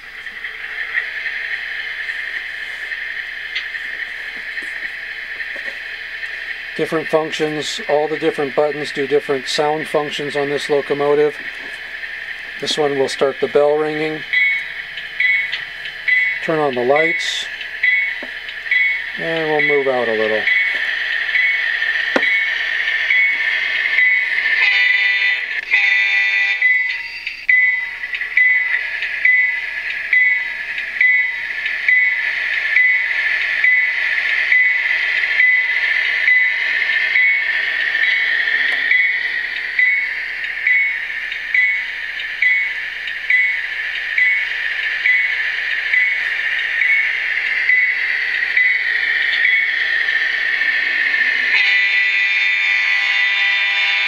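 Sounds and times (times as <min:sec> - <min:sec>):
diesel engine running: 0:00.0 - 0:54.0
locomotive bell ringing: 0:06.8 - 0:11.5, 0:12.6 - 0:54.0
train horn blowing: 0:24.6 - 0:26.7, 0:51.5 - 0:54.0.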